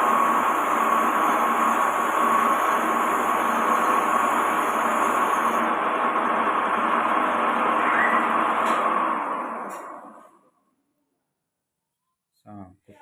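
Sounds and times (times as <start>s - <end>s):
machine running with whine: 0.0s - 10.3s.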